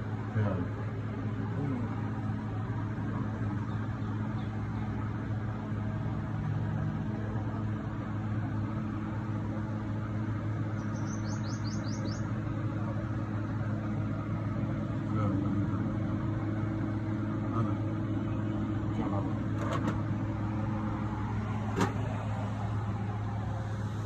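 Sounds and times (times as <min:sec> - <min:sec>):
car engine idling: 0:00.0 - 0:24.0
bird chirping: 0:10.7 - 0:12.4.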